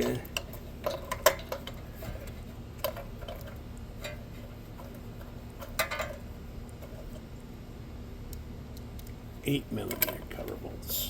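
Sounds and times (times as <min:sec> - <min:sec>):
metal tools clicking and tapping: 0:00.0 - 0:04.2, 0:04.8 - 0:06.2, 0:09.8 - 0:10.5
faint steady hum: 0:00.0 - 0:11.0.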